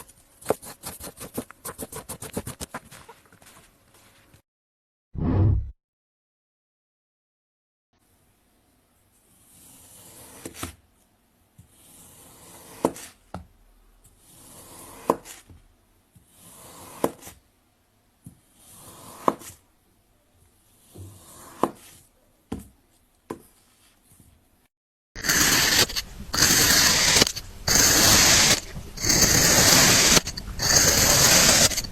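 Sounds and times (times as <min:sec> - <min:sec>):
knife scraping through sand: 0:25.2 - 0:31.9.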